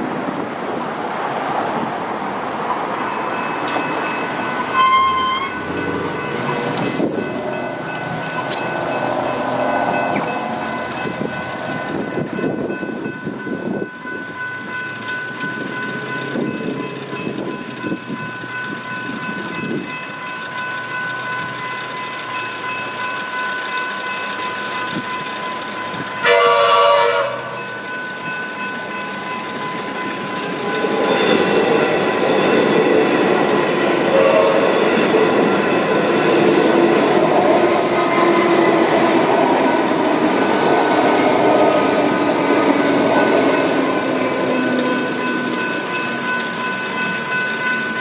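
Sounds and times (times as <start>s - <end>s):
train wheels rumbling on rails: 0.0s - 48.0s
level crossing bells ringing: 2.9s - 40.3s, 41.5s - 48.0s
train horn: 4.7s - 6.0s, 26.2s - 27.6s, 34.1s - 34.9s.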